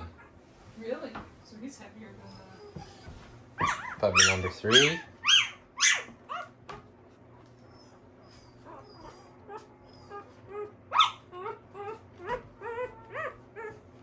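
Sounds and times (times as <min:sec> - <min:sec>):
puppy squealing and whimpering: 0:02.2 - 0:06.6, 0:07.7 - 0:13.8.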